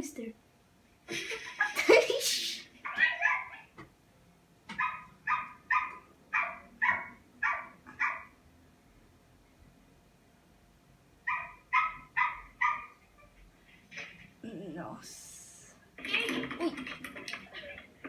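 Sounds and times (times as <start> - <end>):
small dog yipping: 2.8 - 3.7, 4.8 - 8.3, 11.3 - 13.3.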